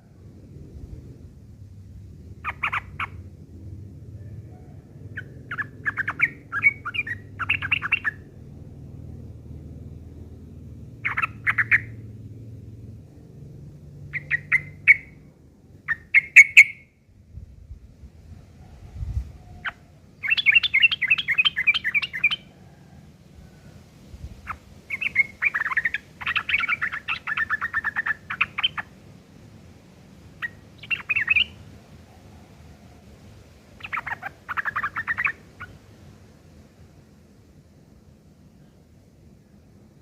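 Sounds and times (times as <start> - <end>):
bird chattering song: 2.4 - 3.3, 5.1 - 8.3, 11.0 - 12.0, 14.0 - 15.2, 15.8 - 16.9, 19.5 - 22.5, 24.4 - 28.9, 30.4 - 31.6, 33.8 - 35.8.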